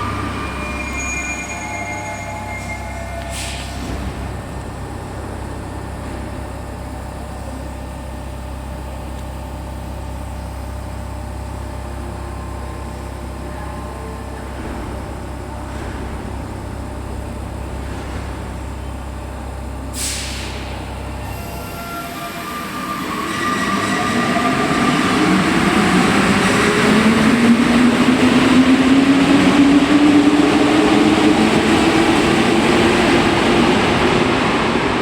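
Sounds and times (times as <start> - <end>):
metro station rumble: 0.0 - 35.0.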